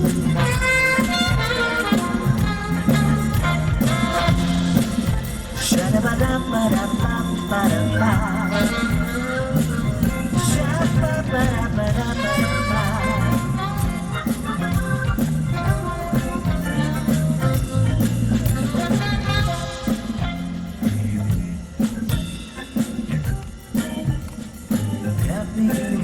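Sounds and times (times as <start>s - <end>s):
bass line: 0.0s - 26.0s
percussion with shaker strokes: 0.0s - 26.0s
wavering melody line: 0.0s - 26.0s.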